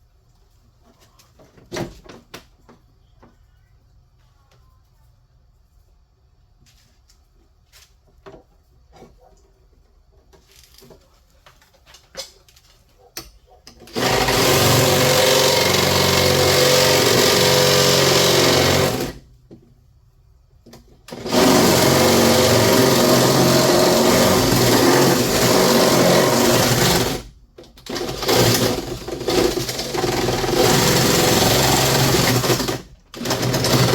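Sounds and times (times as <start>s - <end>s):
power drill drilling: 13.9s - 19.2s, 21.1s - 27.3s, 27.9s - 33.9s.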